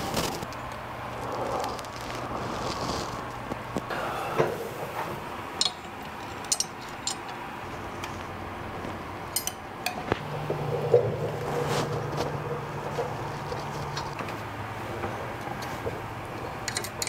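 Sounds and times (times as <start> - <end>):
low steady hum: 0.0 - 17.0
metallic clinks of hand tools: 9.4 - 10.0.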